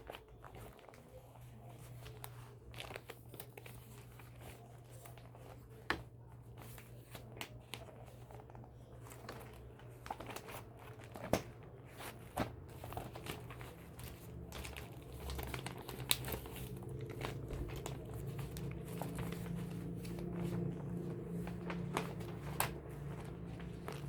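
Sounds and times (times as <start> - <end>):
faint low hum: 0.0 - 24.0
paper crinkling: 0.0 - 24.0.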